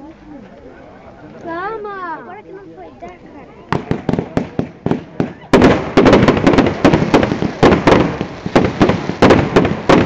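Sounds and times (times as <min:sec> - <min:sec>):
firecrackers banging: 0:03.7 - 0:10.0.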